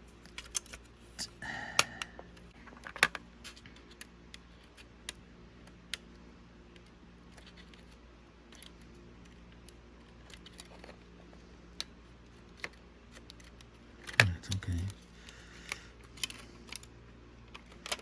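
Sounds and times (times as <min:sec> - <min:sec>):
faint steady hum: 0:00.0 - 0:18.0
small clicks of tools and parts: 0:00.2 - 0:00.9, 0:15.2 - 0:16.9, 0:17.5 - 0:18.0.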